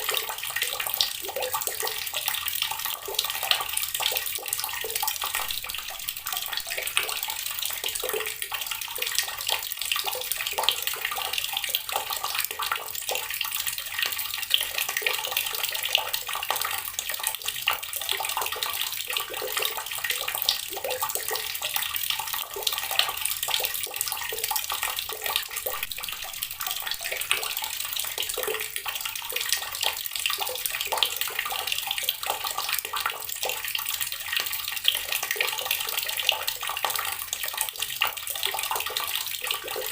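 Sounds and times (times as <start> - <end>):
tap water running and splashing: 0.0 - 39.9.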